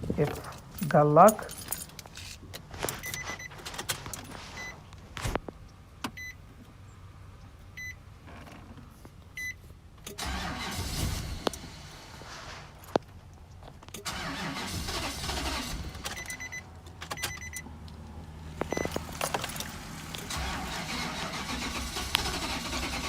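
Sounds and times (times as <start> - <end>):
engine cranking on starter: 10.1 - 12.7, 14.0 - 17.6, 18.7 - 23.0.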